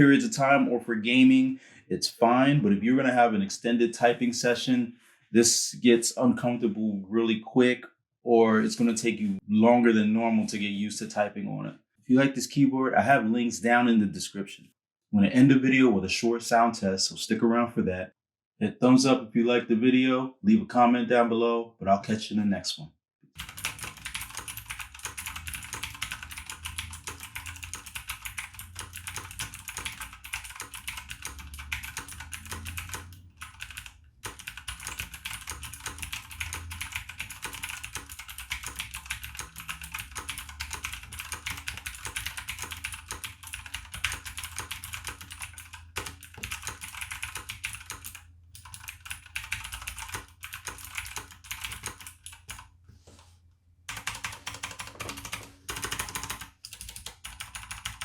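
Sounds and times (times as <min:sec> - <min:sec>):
mechanical keyboard typing: 0:23.4 - 0:52.7, 0:53.9 - 0:58.0.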